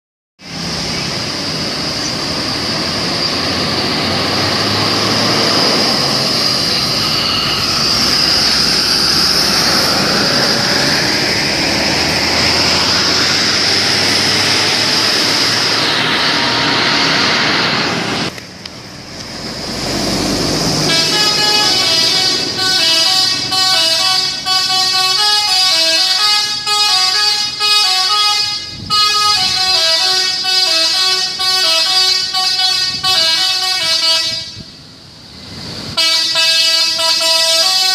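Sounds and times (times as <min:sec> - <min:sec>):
loud rushing noise: 0:00.4 - 0:27.6
bus horn playing a tune: 0:20.8 - 0:34.8, 0:36.0 - 0:37.9.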